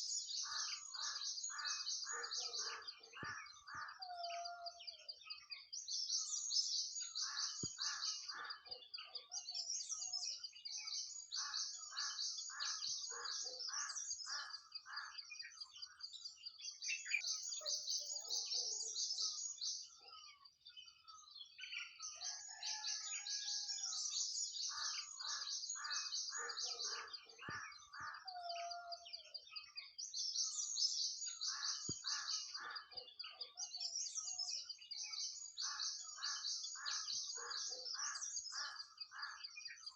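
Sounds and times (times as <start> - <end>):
songbird singing trilled phrases: 0.0 - 39.9.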